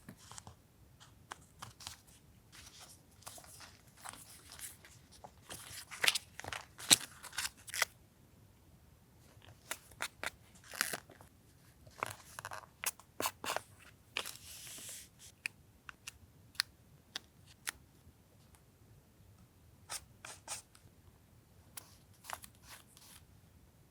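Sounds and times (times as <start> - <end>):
paper rustling and crinkling: 1.4 - 7.9.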